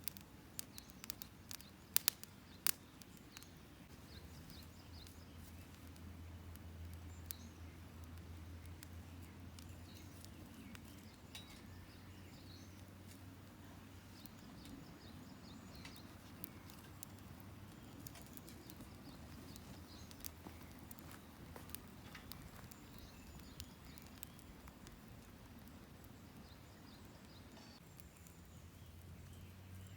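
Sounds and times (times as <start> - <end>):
wood fire crackling: 0.0 - 29.9
soft pops and clicks: 14.2 - 26.2.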